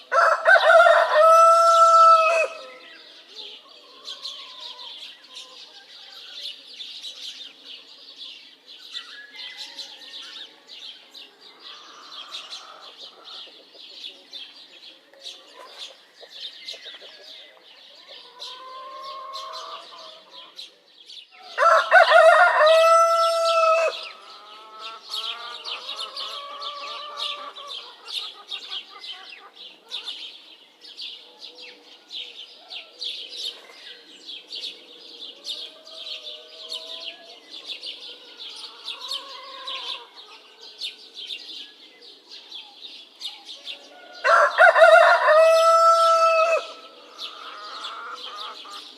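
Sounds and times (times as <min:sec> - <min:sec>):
distant rooster crows: 0:00.0 - 0:02.9, 0:09.0 - 0:10.8, 0:18.3 - 0:20.4, 0:21.4 - 0:27.9, 0:43.7 - 0:48.8
small birds chirping: 0:00.0 - 0:48.9
rooster crowing: 0:00.1 - 0:02.8, 0:21.4 - 0:27.6, 0:43.8 - 0:48.4.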